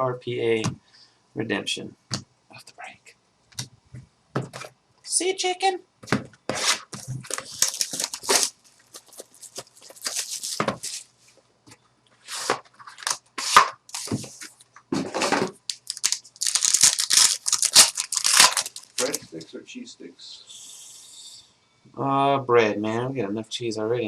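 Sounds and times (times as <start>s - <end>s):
packaging tearing and crinkling: 6.6s - 11.1s, 12.3s - 14.2s, 15.7s - 19.2s.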